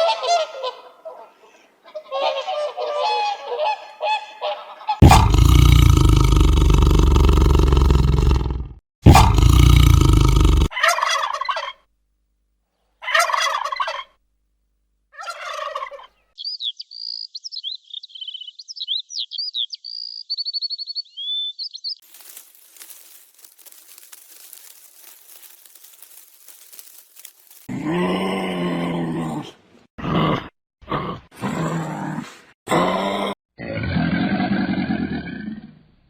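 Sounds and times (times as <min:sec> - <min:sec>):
high twittering bird song: 0:16.3 - 0:22.0.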